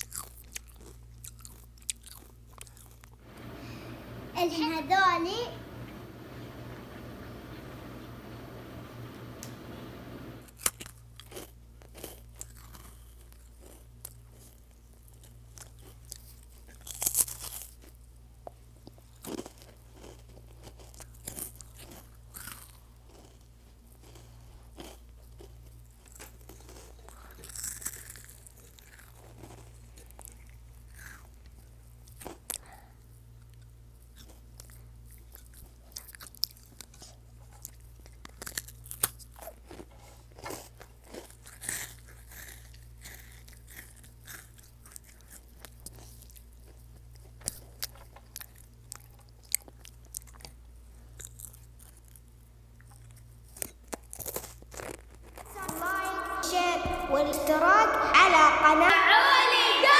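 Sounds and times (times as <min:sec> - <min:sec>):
crunchy food being chewed: 0:00.0 - 0:03.2, 0:09.2 - 0:55.8
faint low hum: 0:03.2 - 0:10.5, 0:55.4 - 0:59.9.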